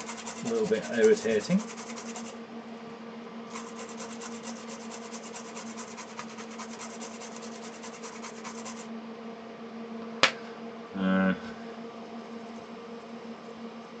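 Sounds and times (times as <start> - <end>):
toothbrush scrubbing circuit board: 0.0 - 2.4, 3.5 - 8.9.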